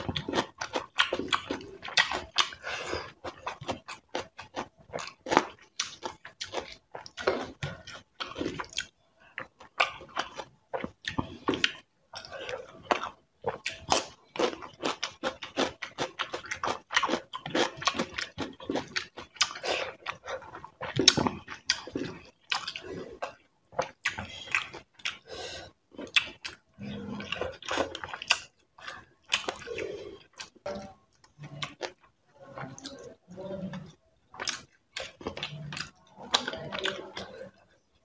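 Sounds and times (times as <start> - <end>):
chewing and wet mouth smacks: 0.0 - 25.2, 26.0 - 26.6, 27.2 - 32.0, 34.3 - 37.6.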